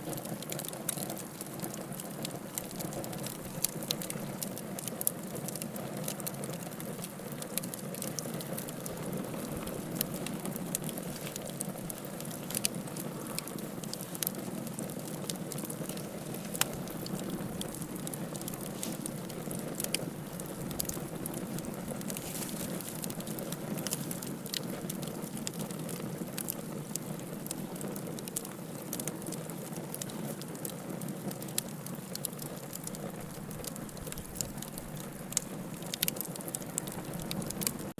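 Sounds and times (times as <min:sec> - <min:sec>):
low rush of flames: 0:00.0 - 0:37.9
wood crackling and popping: 0:00.0 - 0:37.9.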